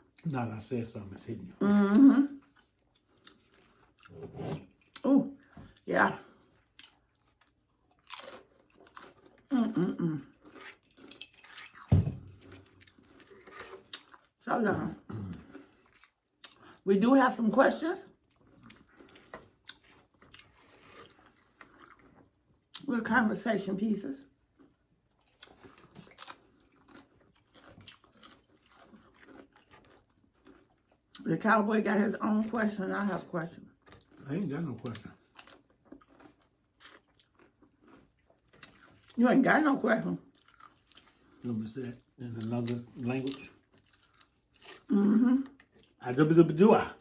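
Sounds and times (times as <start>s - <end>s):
tortilla chips crunching: 6.7s - 14.4s, 24.6s - 31.2s, 34.0s - 39.2s, 40.2s - 45.0s.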